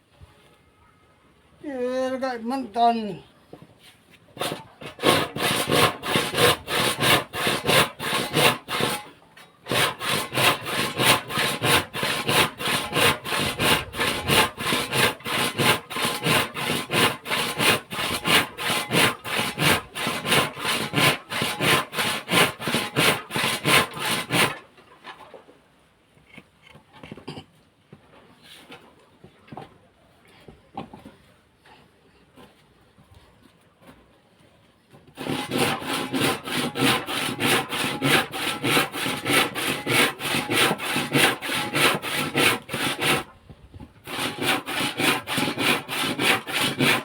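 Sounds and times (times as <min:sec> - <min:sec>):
saw cutting wood: 0:04.4 - 0:24.6, 0:35.2 - 0:43.3, 0:44.0 - 0:47.0.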